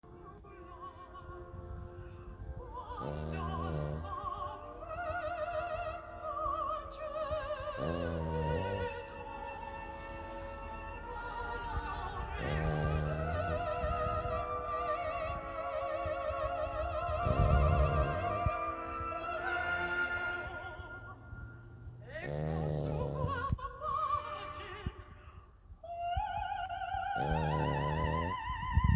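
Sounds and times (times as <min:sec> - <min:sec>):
opera singing with vibrato: 0:00.0 - 0:28.9
loud deep snores: 0:01.8 - 0:23.8, 0:27.1 - 0:28.9.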